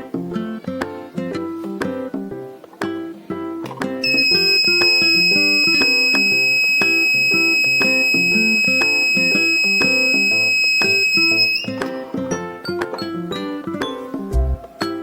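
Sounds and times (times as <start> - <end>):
high-pitched alarm buzzer tone: 4.1 - 11.7.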